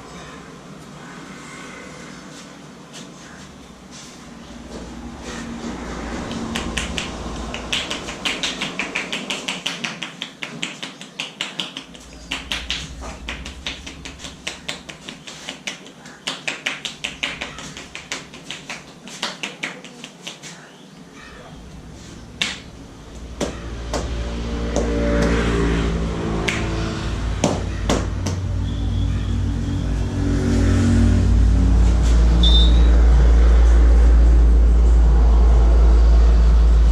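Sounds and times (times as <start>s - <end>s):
hands tapping and slapping head: 6.3s - 20.6s, 22.4s - 22.7s, 23.4s - 25.4s, 27.4s - 28.5s.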